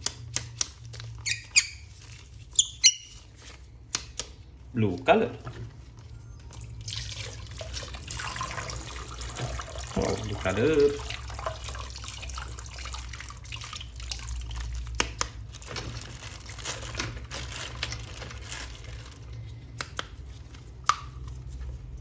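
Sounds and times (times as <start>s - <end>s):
sharp plastic clicks: 0.0s - 1.2s
water drips and splashes: 6.5s - 15.8s.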